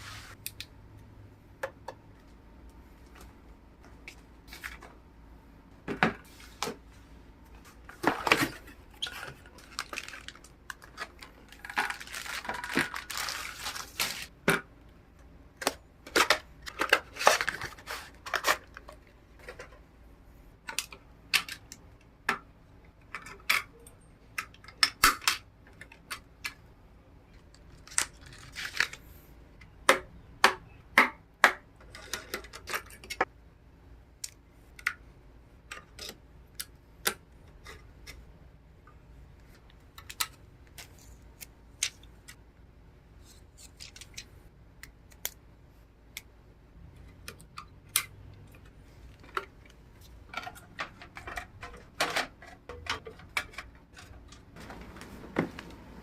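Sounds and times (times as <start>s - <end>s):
packaging rustling: 7.9s - 14.3s, 16.2s - 18.9s
clicks and knocks of plastic and metal: 29.6s - 33.3s, 47.0s - 55.7s.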